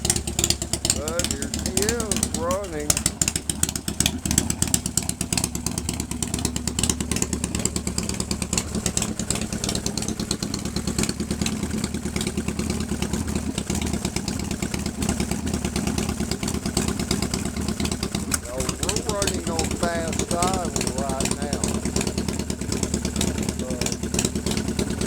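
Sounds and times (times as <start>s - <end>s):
motorcycle engine idling: 0.0s - 25.0s.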